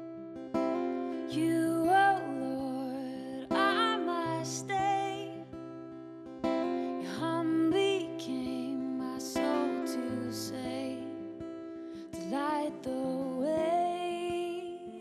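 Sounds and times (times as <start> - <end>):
acoustic guitar strumming chords: 0.0 - 15.0
person singing: 1.2 - 5.5, 6.7 - 11.4, 12.0 - 15.0.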